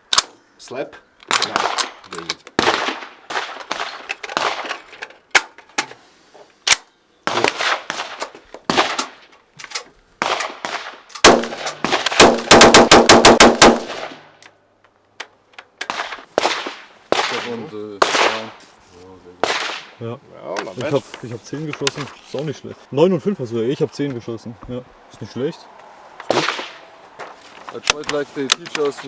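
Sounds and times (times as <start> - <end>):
rifle shots with short echo: 2.6 - 4.6, 10.2 - 14.2, 15.9 - 18.6, 19.4 - 20.0, 26.3 - 26.8.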